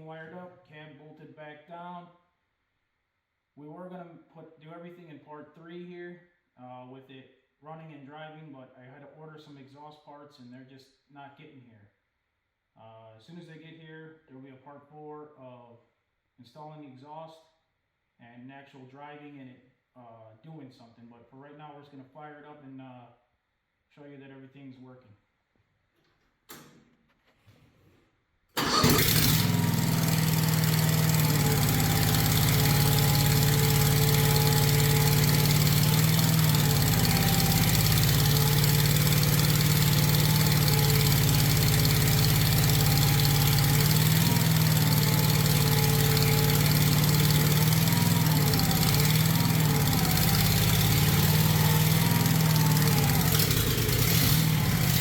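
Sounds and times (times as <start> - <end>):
small engine starting and idling: 28.6 - 55.0.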